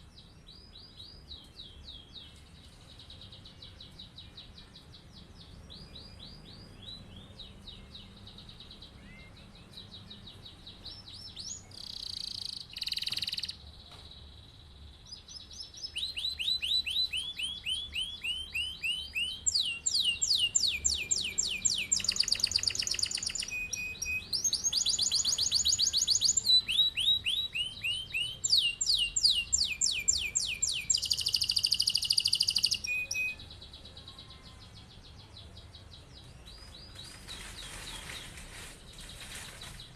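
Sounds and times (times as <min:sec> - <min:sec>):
canary singing trills: 0:00.0 - 0:39.9.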